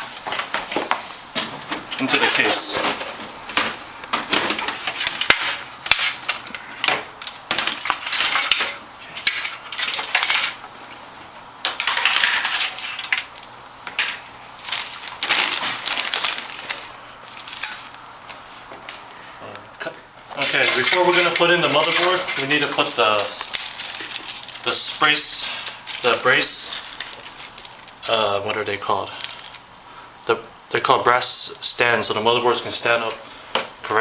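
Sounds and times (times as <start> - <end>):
metal parts clinking: 7.7 - 10.6, 20.4 - 24.4.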